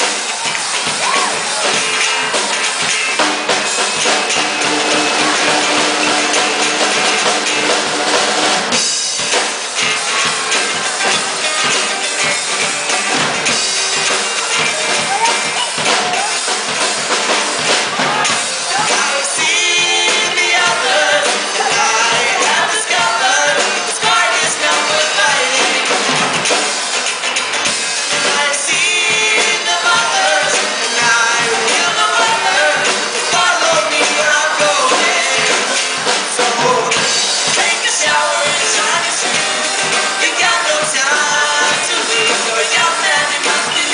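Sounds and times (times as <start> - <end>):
drum kit: 0.0 - 43.9
person singing: 17.8 - 26.2, 28.1 - 43.9.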